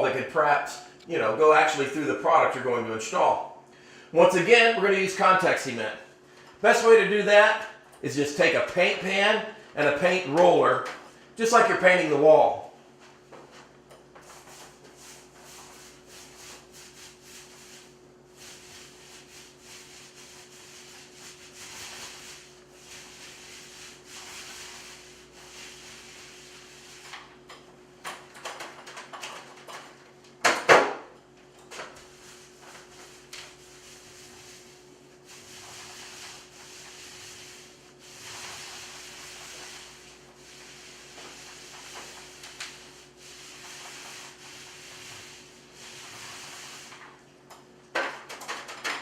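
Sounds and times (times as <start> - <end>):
faint steady hum: 0.0 - 30.5
paint roller swishing on wall: 12.8 - 30.1, 31.6 - 47.4.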